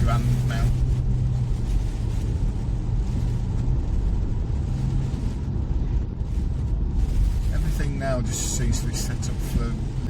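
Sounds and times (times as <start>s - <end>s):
constant low hum: 0.0s - 10.0s
engine and tyre rumble: 0.0s - 10.0s.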